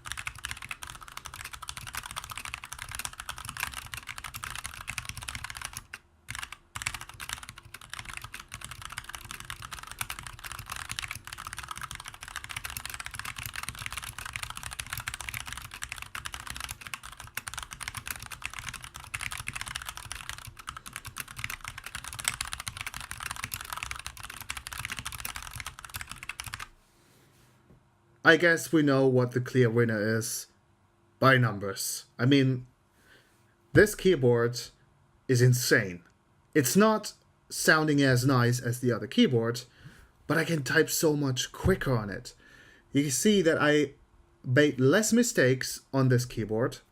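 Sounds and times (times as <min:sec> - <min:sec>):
mechanical keyboard typing: 0:00.0 - 0:26.7.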